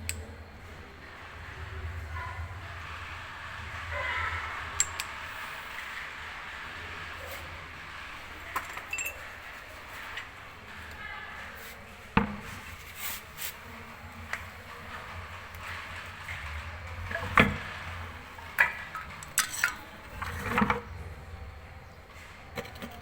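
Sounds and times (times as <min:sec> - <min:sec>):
light metallic clinks and knocks: 0:08.4 - 0:10.3.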